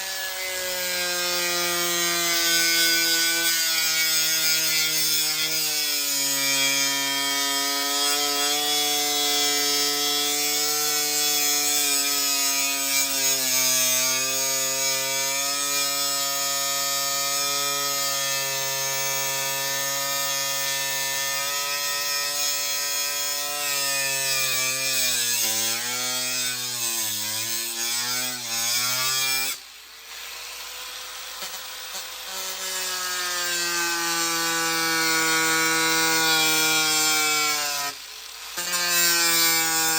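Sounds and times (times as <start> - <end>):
scraping hiss: 24.6 - 39.9.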